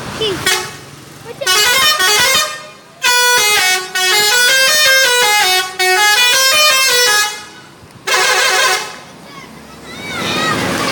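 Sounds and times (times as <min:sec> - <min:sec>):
multi-tone bus horn tune: 0:00.4 - 0:09.0.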